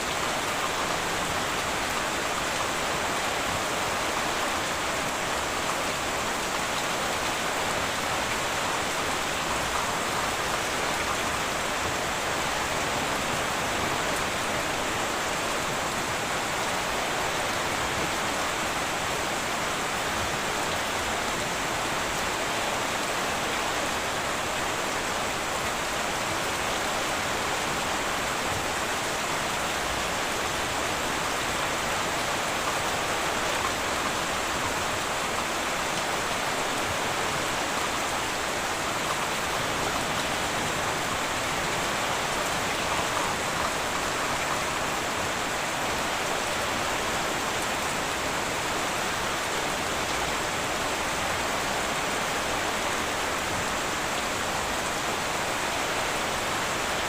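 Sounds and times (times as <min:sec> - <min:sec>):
heavy rain on a tin roof: 0:00.0 - 0:57.0.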